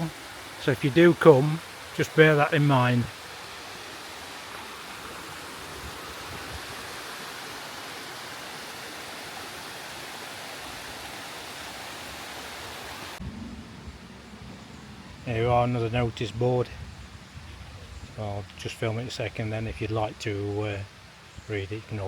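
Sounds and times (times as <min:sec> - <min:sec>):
waterfall rushing: 0:00.0 - 0:13.2.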